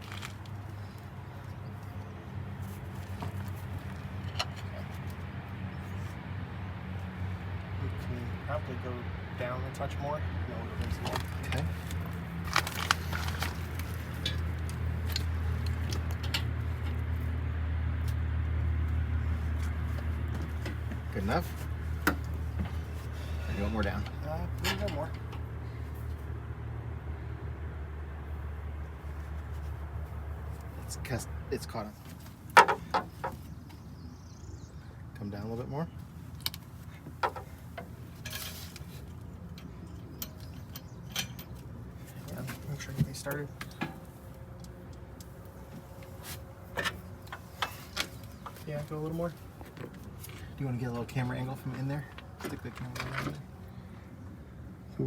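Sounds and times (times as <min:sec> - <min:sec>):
light metallic clicks and clinks: 0:39.5 - 0:41.7.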